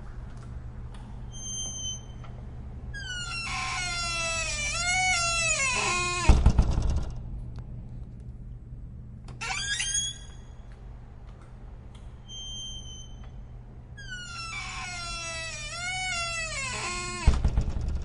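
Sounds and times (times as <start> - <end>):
squeaky door hinge squealing: 1.3 - 2.3, 3.0 - 6.4, 9.4 - 10.6, 12.3 - 17.5
door shutting thud: 4.9 - 7.2, 14.6 - 18.0.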